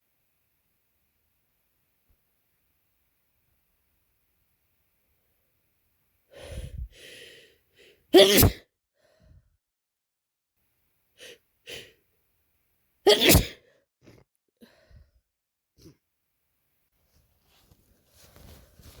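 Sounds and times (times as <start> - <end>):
person sneezing: 8.1 - 8.7, 11.2 - 11.9, 13.1 - 14.2.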